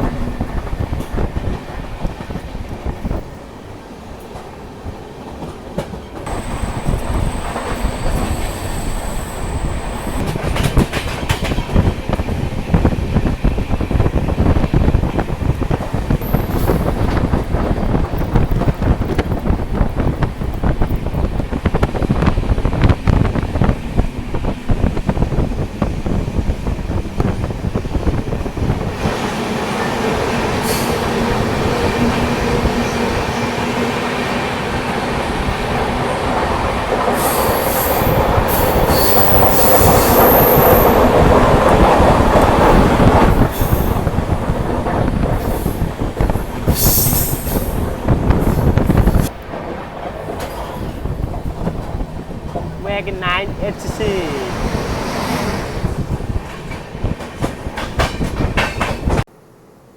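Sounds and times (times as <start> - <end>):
train wheels clattering: 5.2 - 12.4, 55.6 - 59.2
steady rushing noise: 6.3 - 10.3.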